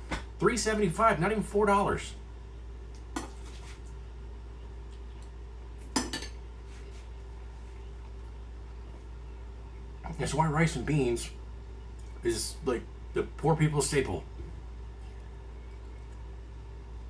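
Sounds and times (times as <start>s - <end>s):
steady low hum: 0.0s - 17.0s
dishes and utensils clinking: 5.9s - 6.4s.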